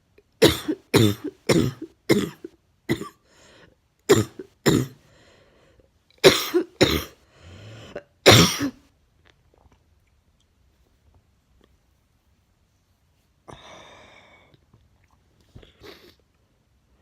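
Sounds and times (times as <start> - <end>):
woman coughing: 0.4 - 3.2, 4.1 - 5.0, 6.2 - 7.2, 8.3 - 8.8
breathing: 3.2 - 3.8, 5.0 - 6.0, 7.2 - 8.1, 13.5 - 14.6.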